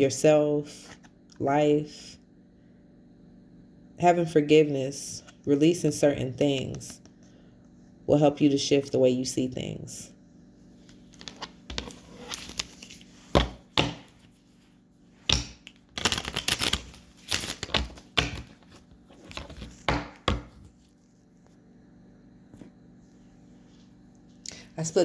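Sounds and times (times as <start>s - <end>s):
cards being shuffled: 11.0s - 14.3s, 15.4s - 20.9s
cards tapping on table: 19.4s - 20.5s.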